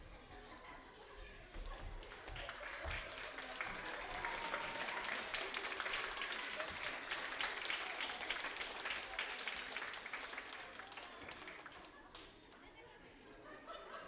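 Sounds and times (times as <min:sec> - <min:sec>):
audience applauding: 0:02.0 - 0:12.2.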